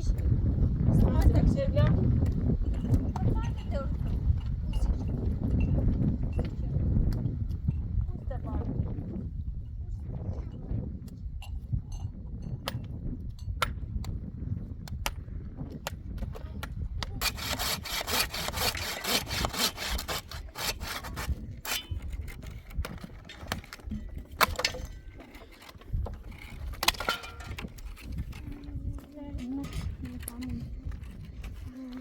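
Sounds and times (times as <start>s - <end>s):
rasping wood by hand: 17.2s - 23.0s.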